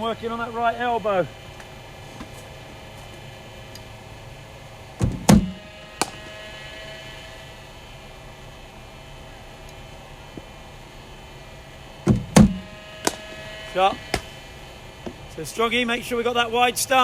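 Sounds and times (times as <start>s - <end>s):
mains hum: 0.0s - 17.0s
bowling machine thump: 5.0s - 6.2s, 12.0s - 13.3s
ball hitting bat crack: 5.2s - 6.3s, 12.4s - 13.4s, 14.0s - 14.4s.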